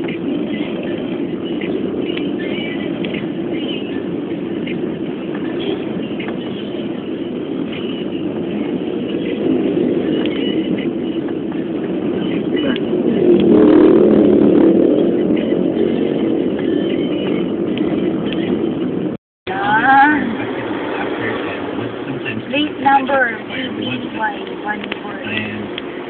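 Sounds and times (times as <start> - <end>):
road traffic engines rumbling: 0.0 - 26.0.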